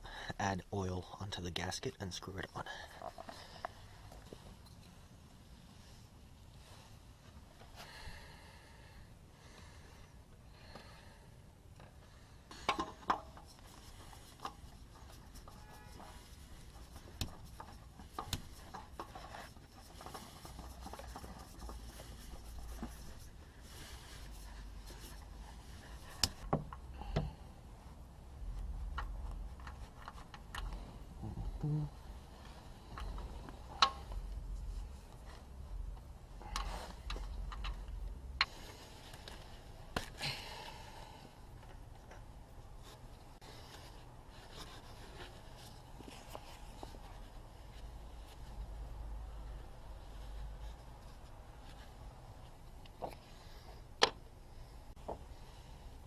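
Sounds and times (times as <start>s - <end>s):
hands working on car parts: 11.7s - 56.0s
faint low rumble: 13.4s - 56.0s.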